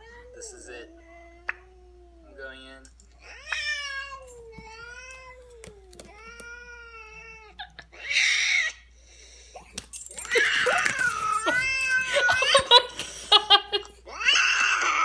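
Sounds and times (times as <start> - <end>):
cat yowling: 3.2 - 8.8, 10.2 - 12.7, 14.1 - 15.0.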